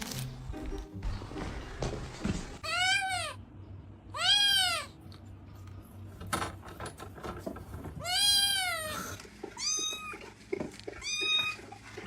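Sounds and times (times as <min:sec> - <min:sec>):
cat meowing: 0:02.6 - 0:03.4, 0:04.1 - 0:05.0, 0:08.0 - 0:10.2.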